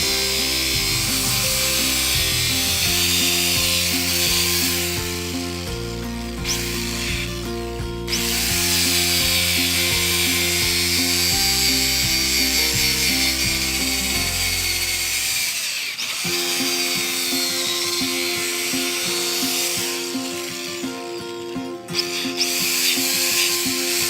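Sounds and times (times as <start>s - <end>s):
background music with bass: 0.0s - 15.3s
power tool whining: 0.0s - 24.0s.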